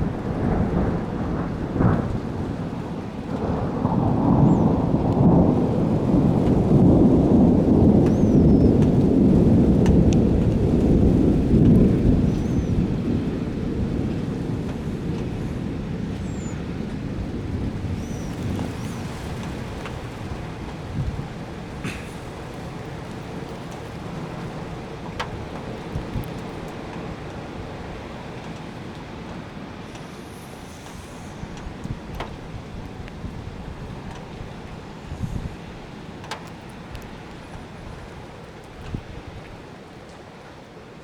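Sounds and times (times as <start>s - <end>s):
thunder crack: 0.0s - 26.5s
low rolling thunder rumble: 0.0s - 40.0s.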